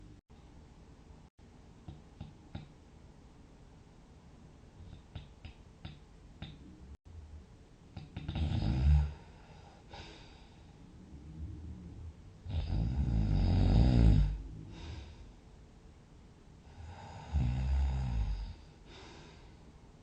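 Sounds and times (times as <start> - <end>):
loud low snore: 8.0 - 10.1, 12.4 - 15.2, 16.7 - 18.7
faint breathing: 9.0 - 12.8, 14.2 - 15.6, 18.1 - 19.8.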